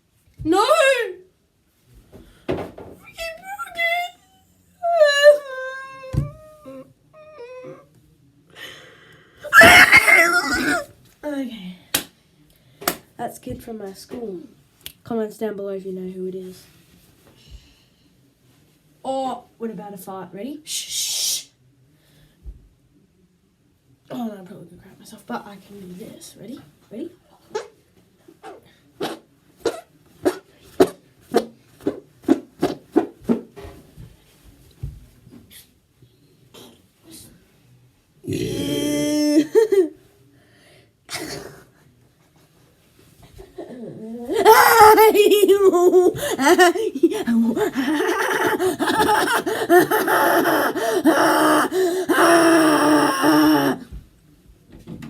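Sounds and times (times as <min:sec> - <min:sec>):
boy laughing breathlessly: 0:09.4 - 0:10.8, 0:44.3 - 0:53.8
person making rasping noises: 0:09.5 - 0:10.9, 0:44.2 - 0:53.8
boy gasping breaths: 0:44.3 - 0:53.8.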